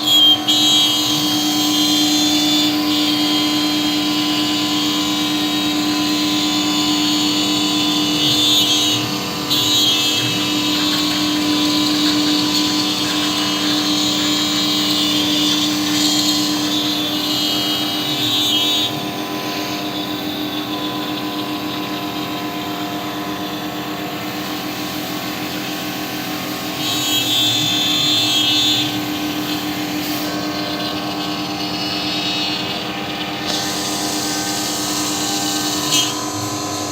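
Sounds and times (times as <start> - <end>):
router spindle whine: 0.0 - 36.9
high-pitched cutting noise: 23.4 - 36.9.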